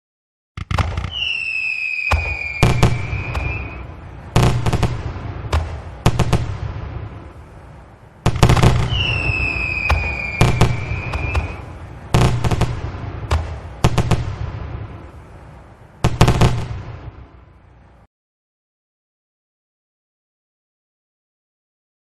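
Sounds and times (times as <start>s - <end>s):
firework bangs echoing: 0.6s - 17.4s
whistling firework: 0.7s - 6.8s, 8.3s - 14.6s.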